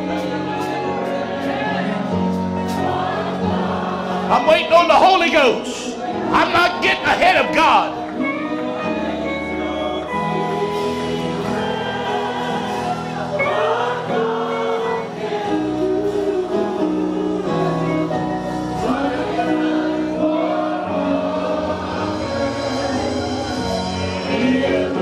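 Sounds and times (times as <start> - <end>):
gospel singing over held chords: 0.0 - 25.0.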